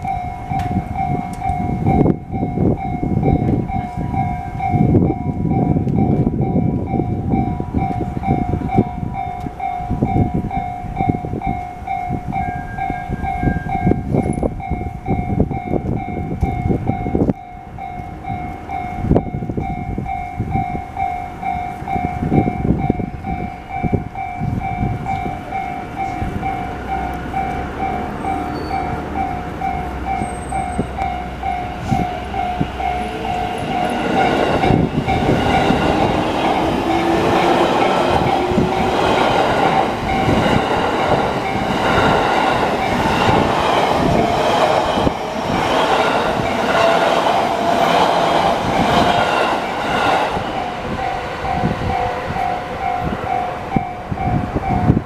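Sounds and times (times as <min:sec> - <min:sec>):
train rumble and wheel clatter: 0:00.0 - 0:55.0.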